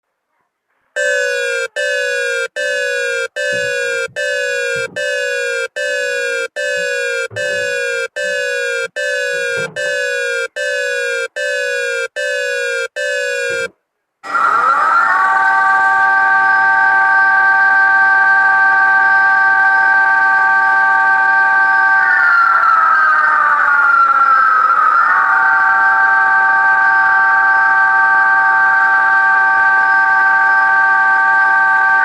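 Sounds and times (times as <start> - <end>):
downward sliding alarm beeps: 1.0 - 13.7
steady multi-note alert tone: 1.0 - 13.7.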